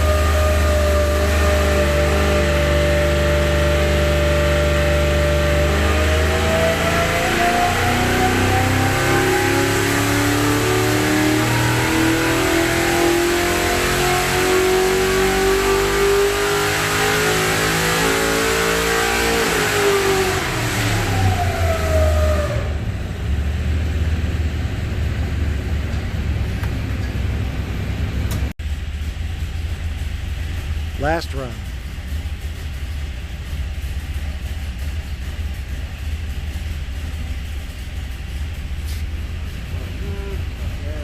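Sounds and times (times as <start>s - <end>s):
racing engine revving: 0.0s - 28.5s.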